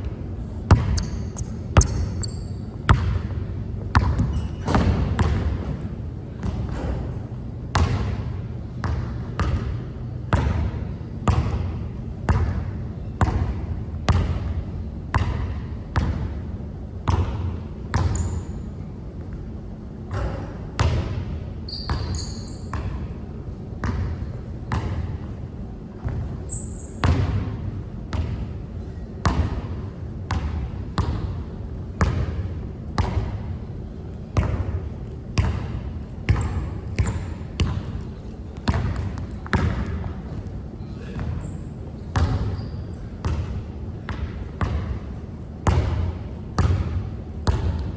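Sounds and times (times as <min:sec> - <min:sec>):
basketball bouncing on hard court: 0:00.7 - 0:11.6, 0:12.3 - 0:14.5, 0:15.1 - 0:16.3, 0:17.0 - 0:18.4, 0:20.1 - 0:21.2, 0:21.9 - 0:23.1, 0:23.8 - 0:25.1, 0:26.9 - 0:27.5, 0:28.1 - 0:28.4, 0:29.2 - 0:29.7, 0:30.3 - 0:31.4, 0:32.0 - 0:32.4, 0:33.0 - 0:33.5, 0:34.4 - 0:34.8, 0:35.4 - 0:38.0, 0:38.6 - 0:40.4, 0:42.1 - 0:45.0, 0:45.6 - 0:47.9
short high squeaks: 0:01.0 - 0:02.7, 0:21.7 - 0:22.7, 0:26.5 - 0:27.0.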